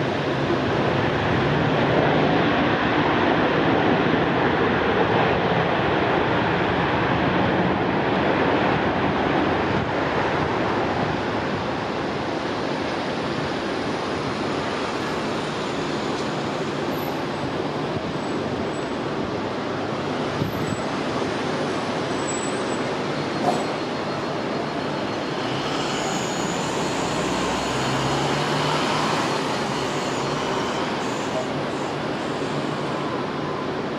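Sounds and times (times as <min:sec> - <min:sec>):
jet engines of landing airliner: 0:00.0 - 0:33.9.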